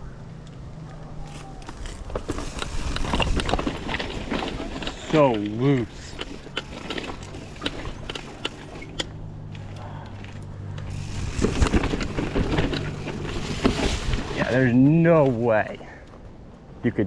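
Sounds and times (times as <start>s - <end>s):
ski edges clicking: 1.6s - 9.2s
skis scraping over snow: 1.7s - 8.9s, 10.9s - 15.5s.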